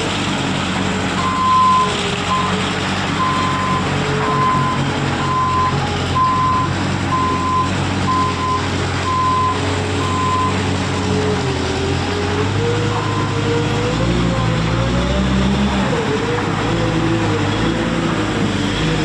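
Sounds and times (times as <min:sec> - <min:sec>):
loader engine running: 0:00.0 - 0:19.0
backup alarm beeping: 0:03.2 - 0:10.6.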